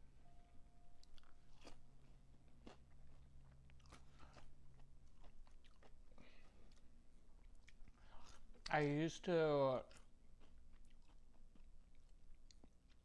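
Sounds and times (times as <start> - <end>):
chewing crunchy fried food: 1.0 - 13.0.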